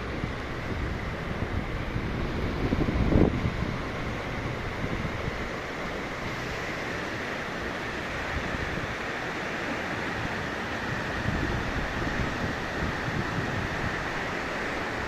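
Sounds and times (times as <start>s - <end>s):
wind buffeting microphone: 0.0s - 6.6s, 10.1s - 15.0s
steady rushing noise: 0.0s - 15.0s.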